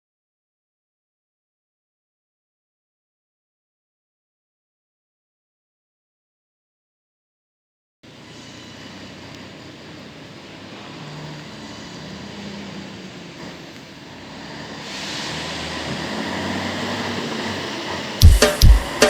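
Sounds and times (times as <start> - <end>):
heavy truck engine running: 8.0 - 19.0
rush of higher noise: 17.5 - 19.0.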